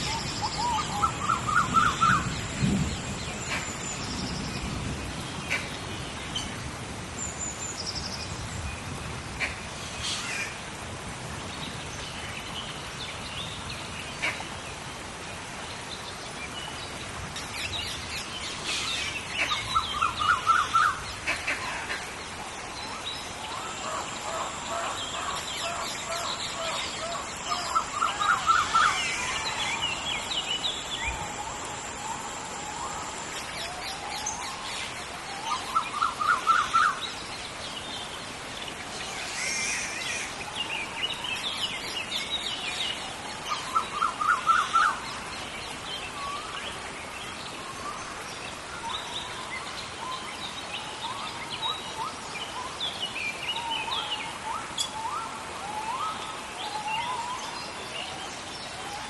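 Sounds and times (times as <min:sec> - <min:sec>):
rain hiss: 0:00.0 - 0:59.0
birds calling: 0:17.4 - 0:37.8.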